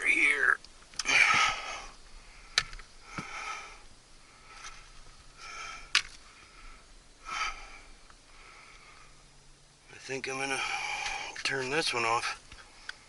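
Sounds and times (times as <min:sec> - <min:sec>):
man breathing heavily: 0:01.0 - 0:09.4, 0:10.4 - 0:11.6.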